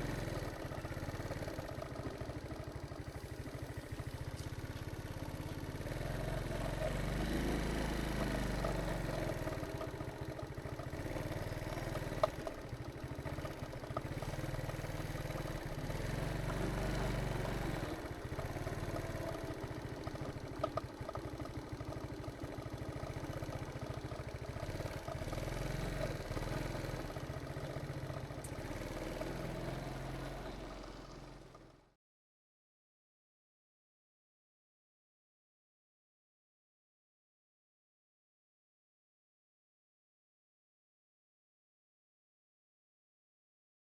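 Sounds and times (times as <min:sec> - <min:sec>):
motorbike engine running: 0:00.0 - 0:31.9.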